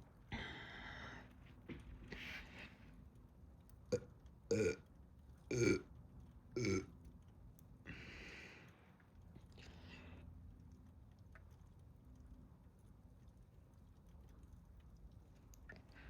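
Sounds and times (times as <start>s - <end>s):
woman burping: 5.5s - 5.8s, 6.6s - 6.9s.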